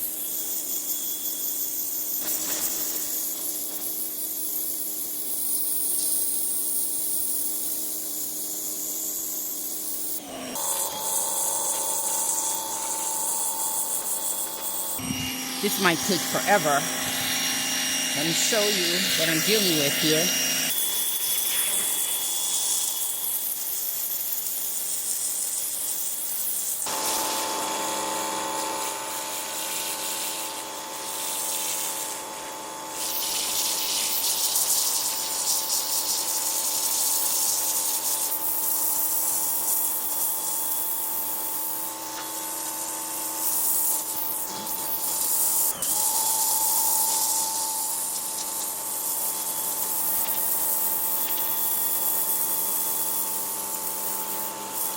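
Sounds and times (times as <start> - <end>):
pressure washer spraying: 8.7 - 39.8, 42.8 - 54.9
machine humming tone: 10.0 - 24.0, 43.8 - 54.9.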